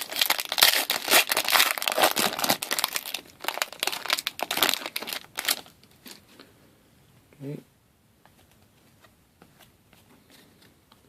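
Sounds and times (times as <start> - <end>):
plastic wrapping crinkling: 0.0 - 6.3.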